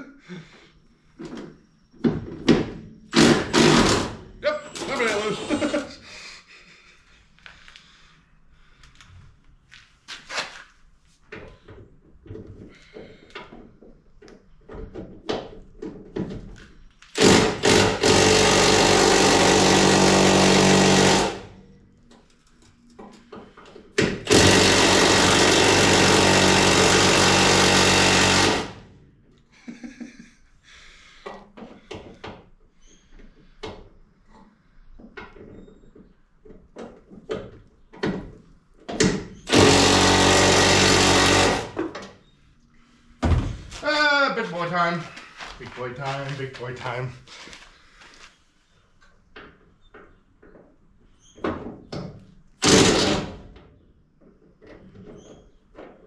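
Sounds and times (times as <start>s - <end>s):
power tool running: 3.1s - 4.2s, 17.2s - 21.6s, 24.2s - 28.9s, 39.4s - 41.9s, 52.6s - 53.4s
knocks and clanks of tools: 11.3s - 17.9s, 31.2s - 39.7s.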